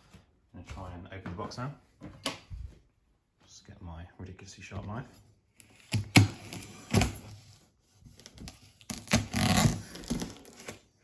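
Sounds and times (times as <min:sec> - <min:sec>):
knife tearing cardboard: 0:08.2 - 0:10.9.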